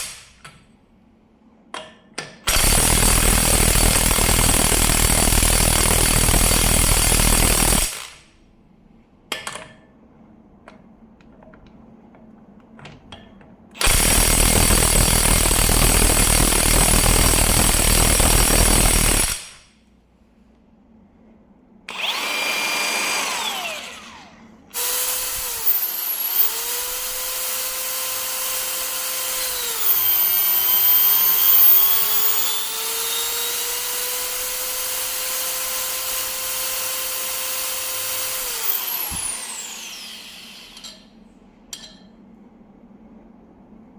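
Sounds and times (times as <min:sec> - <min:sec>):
impact wrench hammering: 0:13.8 - 0:19.6, 0:24.8 - 0:41.0
motor whining: 0:21.9 - 0:41.0.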